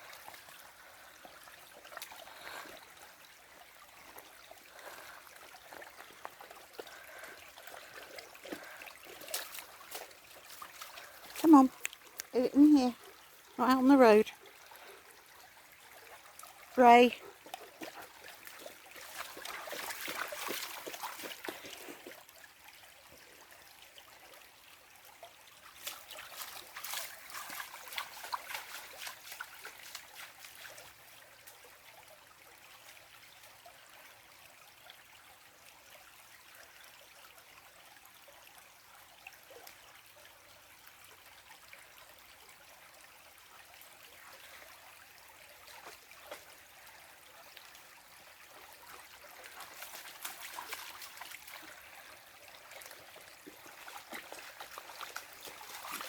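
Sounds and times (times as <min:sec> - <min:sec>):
river water trickling: 0:00.0 - 0:56.0
water splashing: 0:04.8 - 0:13.0, 0:16.0 - 0:22.2, 0:25.7 - 0:30.9, 0:48.6 - 0:56.0.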